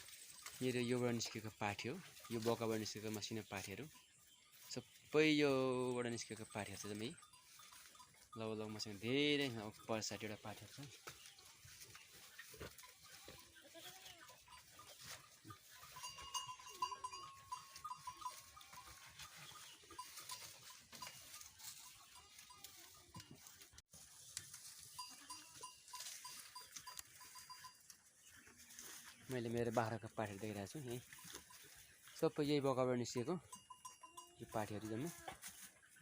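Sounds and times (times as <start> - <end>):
goats bleating: 12.7 - 14.4.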